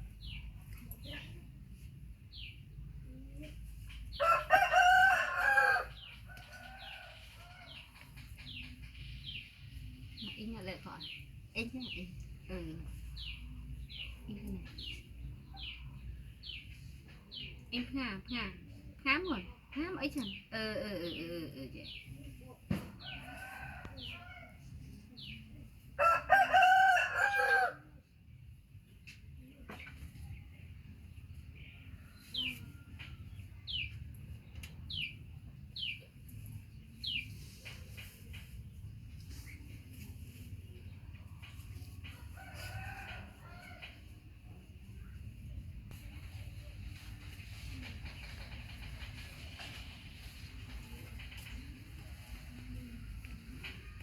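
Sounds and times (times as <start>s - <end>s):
small birds chirping: 0.0s - 4.4s, 31.4s - 43.8s
rooster crowing: 4.2s - 7.8s, 26.0s - 27.8s, 42.3s - 43.9s.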